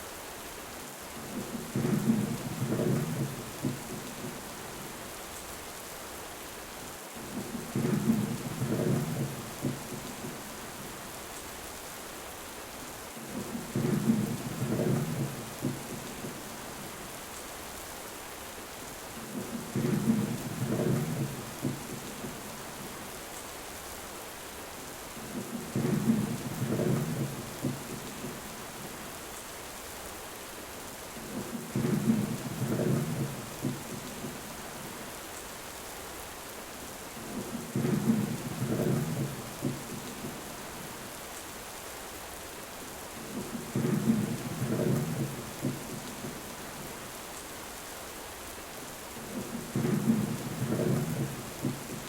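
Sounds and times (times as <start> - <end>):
steady rain hiss: 0.0 - 52.0
thunder rumble: 37.2 - 40.4, 43.2 - 46.5, 49.3 - 52.0.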